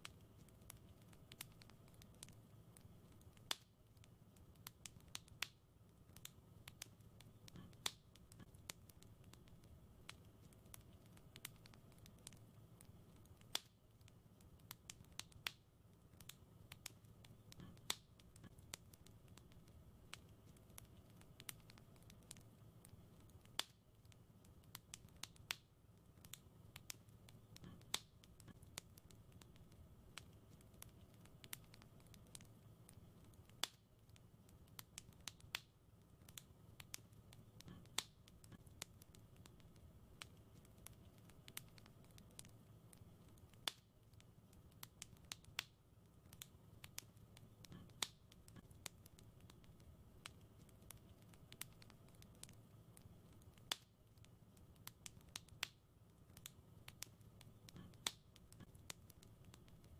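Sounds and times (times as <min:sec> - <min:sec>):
faint low background hum: 0:00.0 - 0:59.9
wood fire crackling: 0:00.0 - 0:59.9.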